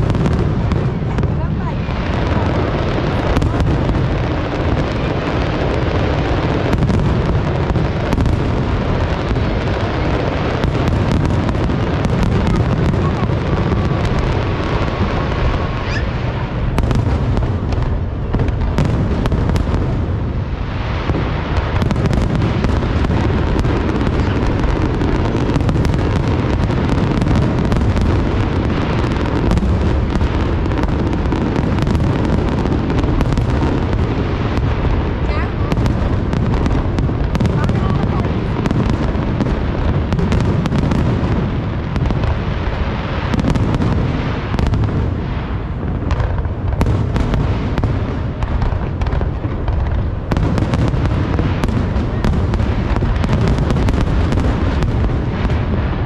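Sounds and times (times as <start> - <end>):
fireworks booming: 0.0 - 56.0
fireworks cracks and pops: 0.0 - 56.0.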